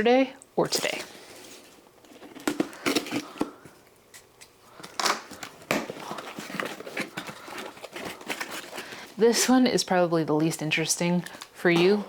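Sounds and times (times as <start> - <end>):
packaging rustling and crinkling: 0.7 - 9.2.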